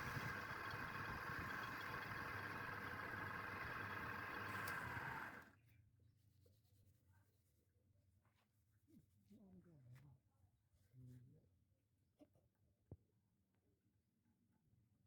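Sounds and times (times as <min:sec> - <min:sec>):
faint ticks: 0:00.0 - 0:05.4
turning tool scraping wood: 0:00.0 - 0:05.4
wood lathe whine: 0:00.0 - 0:05.4.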